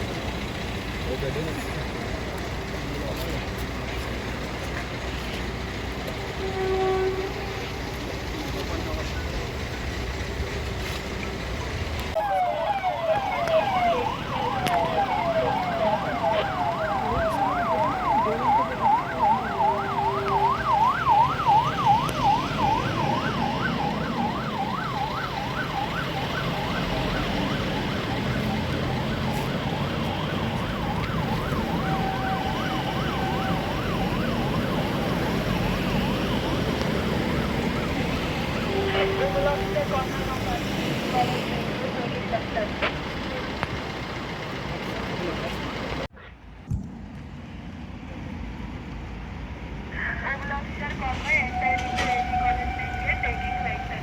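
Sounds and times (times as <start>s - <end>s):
traffic noise: 0.0s - 54.0s
siren yelping: 12.2s - 41.4s, 51.4s - 54.0s.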